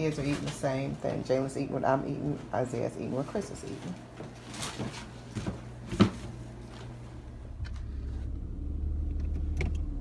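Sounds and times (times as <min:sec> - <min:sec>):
car driving rumble from inside: 0:07.6 - 0:10.0.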